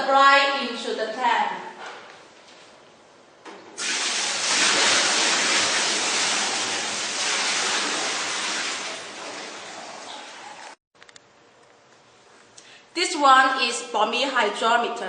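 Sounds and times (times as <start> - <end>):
brine splashing pour: 3.8 - 10.8.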